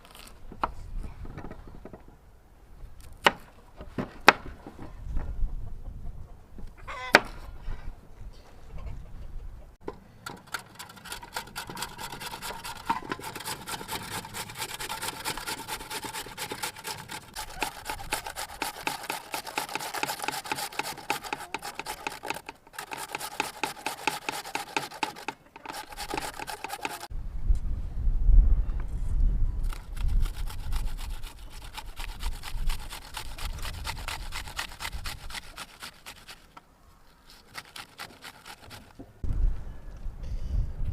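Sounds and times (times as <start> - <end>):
rhythmic metallic scraping: 10.4 - 27.1.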